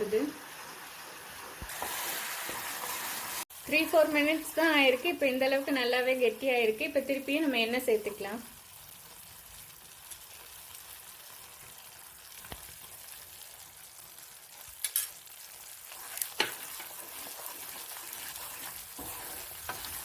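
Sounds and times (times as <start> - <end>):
paste sizzling in oil: 0.0 - 20.0
spoon scraping pan: 15.9 - 20.0.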